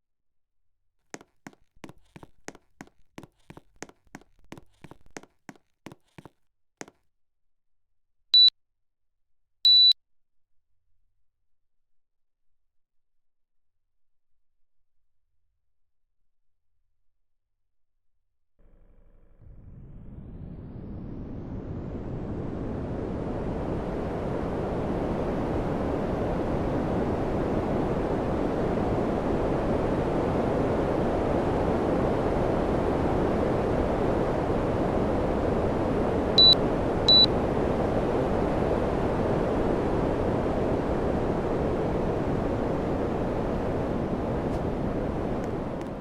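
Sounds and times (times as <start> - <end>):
short high electronic beeps: 9.7 - 10.0, 36.4 - 37.3
air conditioner blowing air: 21.6 - 46.0.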